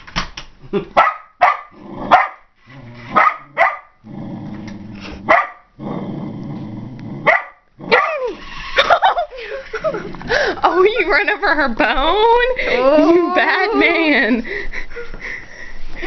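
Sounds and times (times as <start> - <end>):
dog barking: 1.0 - 2.5, 3.2 - 4.0, 5.3 - 5.7, 7.2 - 8.3.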